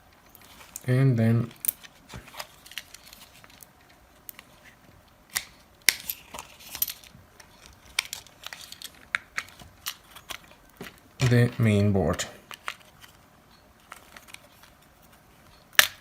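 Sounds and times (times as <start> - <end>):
plastic parts clicking together: 5.3 - 11.4.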